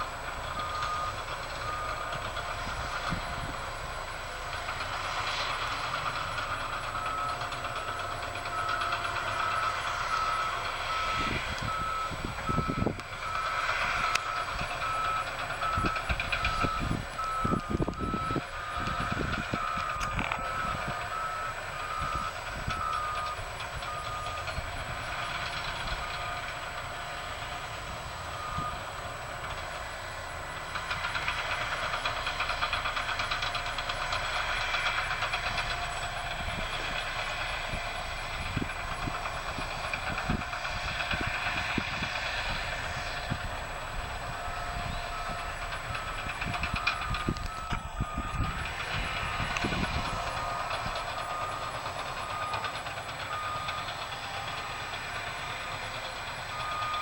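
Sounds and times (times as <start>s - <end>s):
heavy machinery running: 0.0s - 57.0s
reversing alarm beeping: 0.0s - 57.0s.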